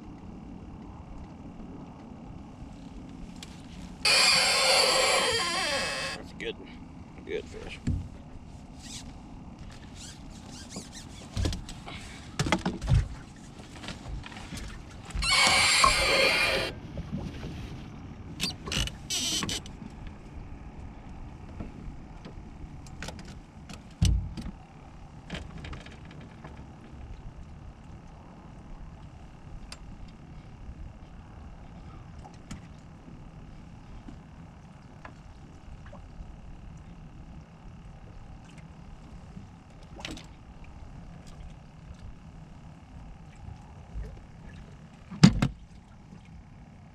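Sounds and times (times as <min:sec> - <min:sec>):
knocks and thumps in a boat: 0:07.7 - 0:08.3, 0:09.6 - 0:20.1, 0:21.1 - 0:27.8, 0:31.8 - 0:32.8, 0:43.2 - 0:46.5.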